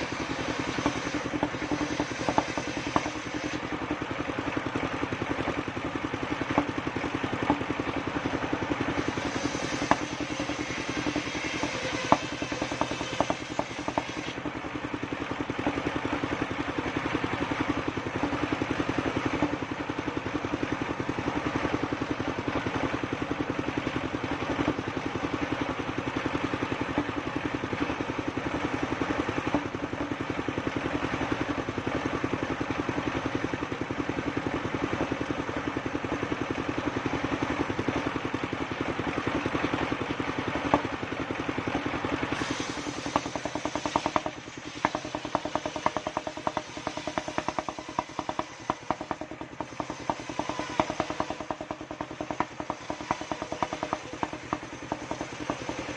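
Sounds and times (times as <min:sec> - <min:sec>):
sharp knocks and clatter: 0:00.0 - 0:03.7, 0:06.4 - 0:07.9, 0:09.0 - 0:14.5, 0:40.5 - 0:41.0, 0:42.4 - 0:55.9
sawmill engine running: 0:00.0 - 0:55.9.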